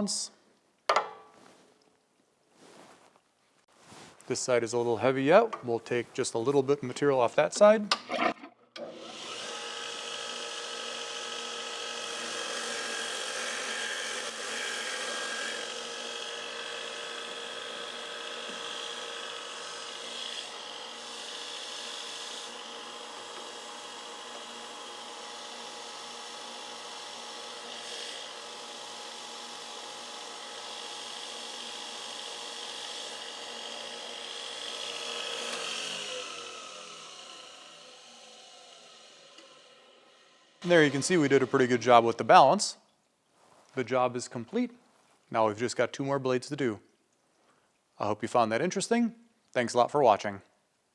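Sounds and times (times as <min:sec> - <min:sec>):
blade grinder grinding steel: 0:08.2 - 0:42.0.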